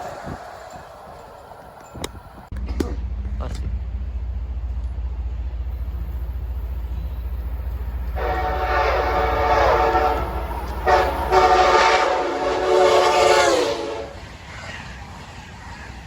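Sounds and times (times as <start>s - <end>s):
train rumble: 0.0s - 16.0s
locomotive air horn: 8.0s - 14.2s.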